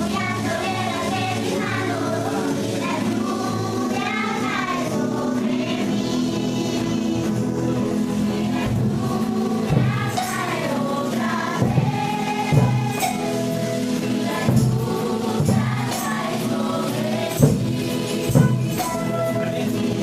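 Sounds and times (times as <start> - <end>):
group of voices singing: 0.0 - 20.0
percussion hits: 6.8 - 20.0.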